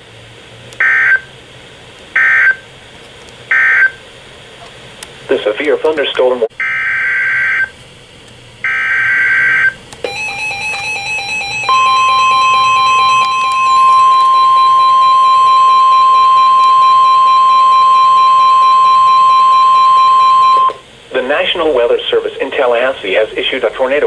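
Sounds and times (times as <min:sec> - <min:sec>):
rapid beeping alarm: 0:00.8 - 0:01.3, 0:02.2 - 0:02.6, 0:03.5 - 0:04.0, 0:06.6 - 0:07.8, 0:08.6 - 0:20.8
screeching data burst: 0:08.6 - 0:20.8
steady warning alert tone: 0:08.7 - 0:21.8.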